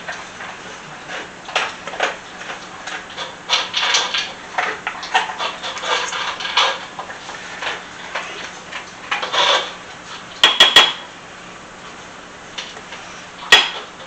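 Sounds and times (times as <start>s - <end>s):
spatula scraping a mixing bowl: 0.4s - 10.8s.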